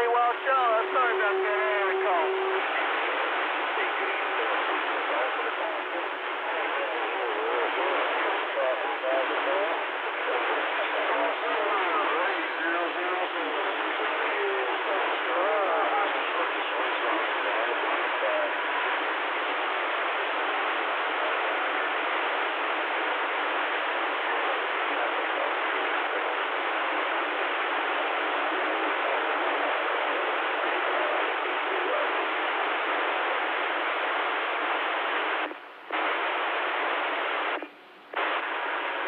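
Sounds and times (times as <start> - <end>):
radio static hiss: 0.0 - 39.0.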